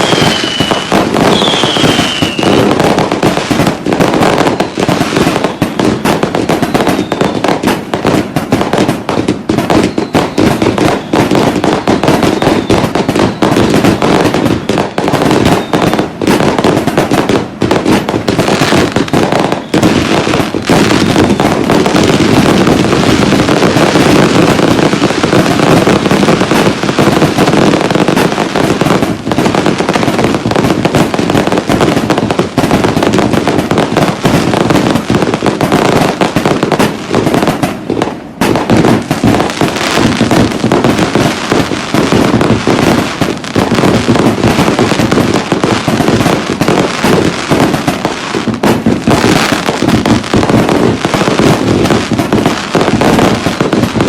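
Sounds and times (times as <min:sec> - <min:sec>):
falling firework whistle: 0:00.0 - 0:03.7, 0:04.3 - 0:08.8, 0:09.5 - 0:18.0, 0:18.6 - 0:26.7
fireworks bangs and crackling: 0:00.0 - 0:54.0.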